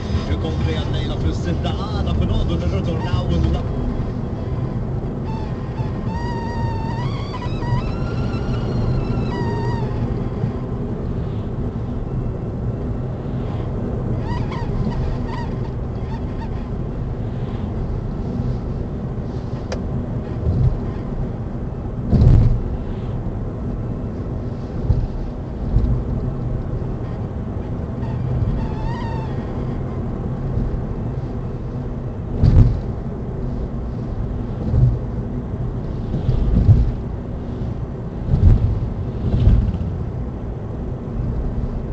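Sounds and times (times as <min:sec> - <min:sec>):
wavering high-pitched squeaks: 0:00.0 - 0:10.9, 0:14.1 - 0:16.9, 0:27.0 - 0:30.8
car low rumble: 0:00.0 - 0:41.9
dull thumps: 0:32.4 - 0:32.8.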